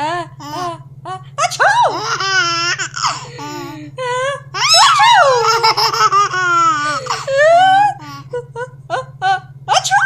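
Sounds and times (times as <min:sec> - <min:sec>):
baby laughing and squealing: 0:02.0 - 0:03.7, 0:04.6 - 0:08.2.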